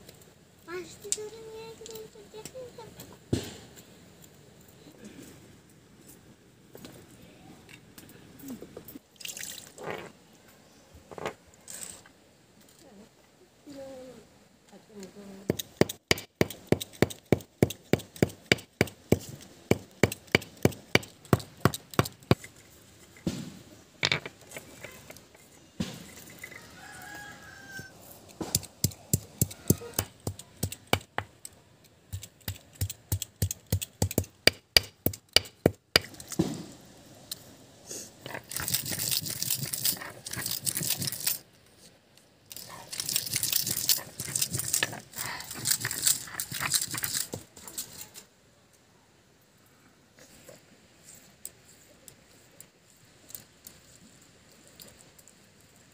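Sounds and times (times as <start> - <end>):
knife chopping vegetables: 32.1 - 36.1.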